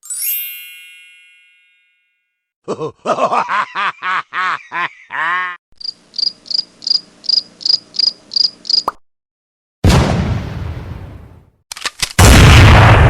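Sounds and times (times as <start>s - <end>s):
cricket chirping sound effect: 5.8s - 9.0s.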